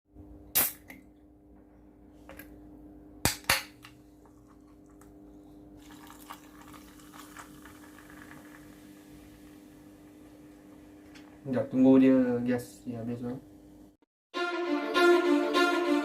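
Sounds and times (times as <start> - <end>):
carbonated drink fizzing: 5.8 - 9.4.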